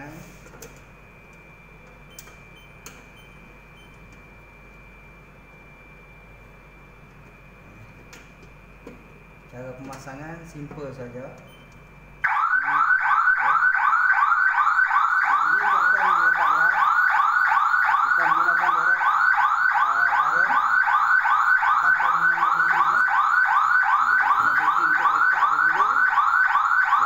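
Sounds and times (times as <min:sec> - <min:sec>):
burglar alarm siren whooping: 0:12.2 - 0:27.0.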